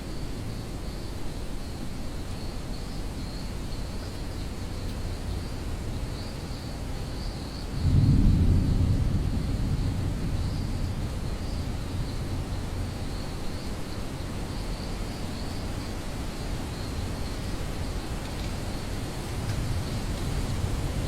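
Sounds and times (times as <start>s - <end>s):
insects trilling: 0.0s - 21.0s
steady low rumble: 7.8s - 13.7s
thunder rumbling: 7.8s - 13.7s.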